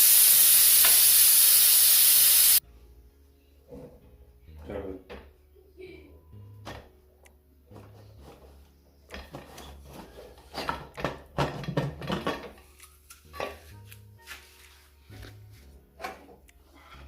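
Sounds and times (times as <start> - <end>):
background music: 2.6 - 17.0
metal cookware clattering: 9.1 - 12.6.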